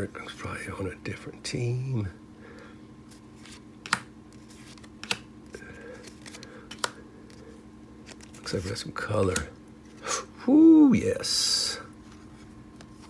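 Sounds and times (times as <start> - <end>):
faint steady hum: 0.0 - 13.0
cards rustling: 3.1 - 10.0.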